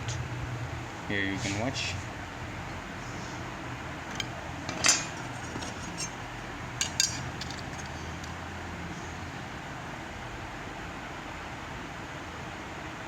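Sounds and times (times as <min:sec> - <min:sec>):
steady low hum: 0:00.0 - 0:11.5
metal brackets clinking: 0:04.1 - 0:06.2, 0:06.8 - 0:08.2.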